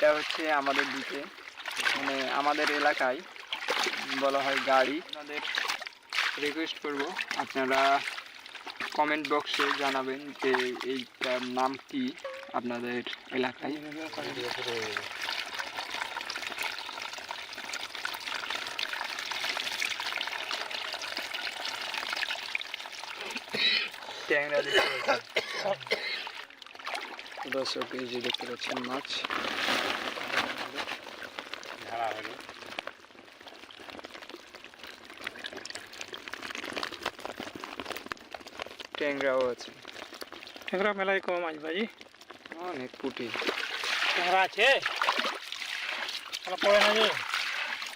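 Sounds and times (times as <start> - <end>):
small splashes crackling: 0.0 - 47.9
water pouring and trickling: 0.0 - 47.9
fish flapping in a trap: 28.7 - 40.8, 42.1 - 47.9.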